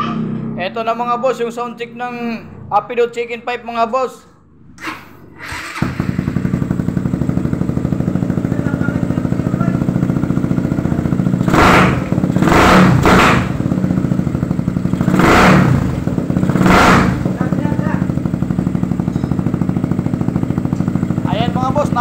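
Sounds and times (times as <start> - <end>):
motorcycle engine revving: 4.5 - 22.0
motorcycle engine idling: 4.8 - 22.0.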